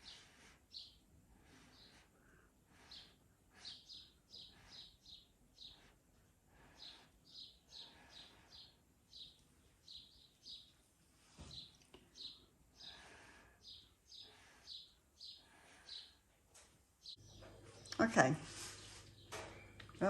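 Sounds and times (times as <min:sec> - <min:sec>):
faint small bird chirps: 0:00.0 - 0:02.1, 0:02.7 - 0:06.0, 0:06.6 - 0:16.2.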